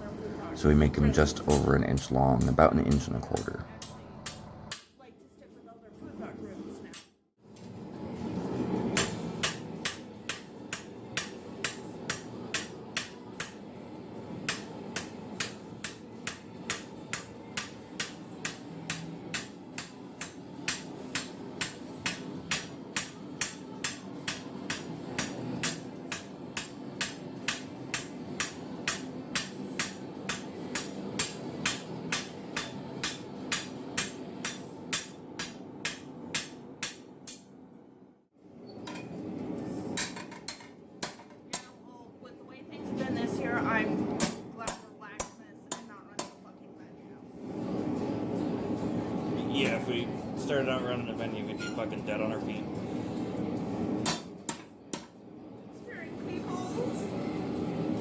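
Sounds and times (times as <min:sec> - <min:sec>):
hammer striking steel on anvil: 0:08.9 - 0:13.7, 0:14.4 - 0:37.5, 0:40.0 - 0:41.8, 0:44.2 - 0:46.4, 0:54.0 - 0:55.2.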